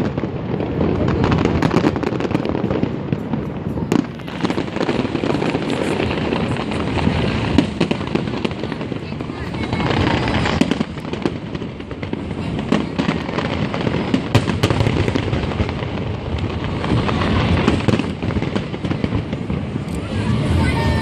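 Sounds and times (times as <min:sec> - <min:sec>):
fireworks cracking and popping: 0:00.0 - 0:21.0
rumble of firework bursts: 0:00.0 - 0:21.0.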